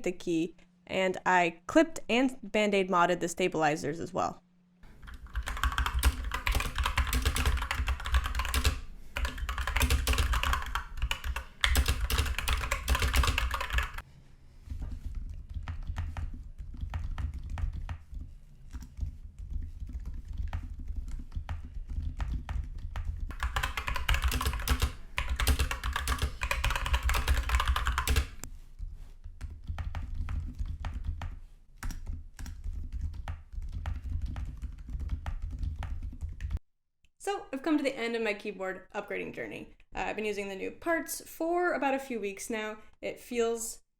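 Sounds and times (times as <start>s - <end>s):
mechanical keyboard typing: 5.0s - 14.0s, 15.3s - 28.4s, 29.4s - 36.6s.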